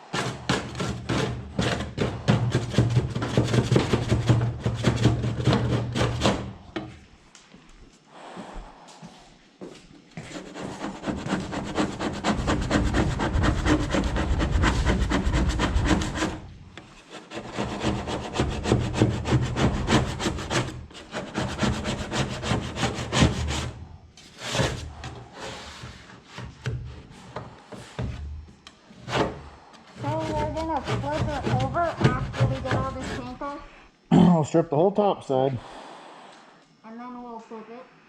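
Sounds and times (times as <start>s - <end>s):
tool scraping paint off metal: 0.0s - 6.9s, 10.2s - 33.4s.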